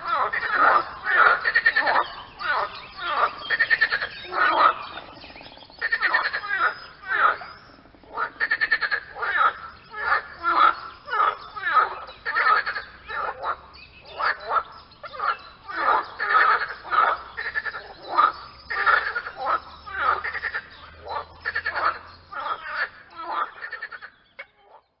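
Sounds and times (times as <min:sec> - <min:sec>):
frog croaking: 0:00.0 - 0:25.0.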